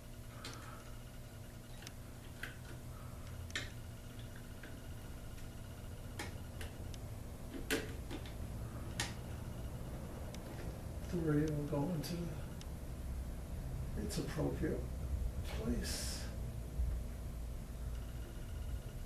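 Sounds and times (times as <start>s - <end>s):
steady low hum: 0.0s - 19.0s
wire connectors clicking into terminals: 1.7s - 4.8s, 6.1s - 9.2s.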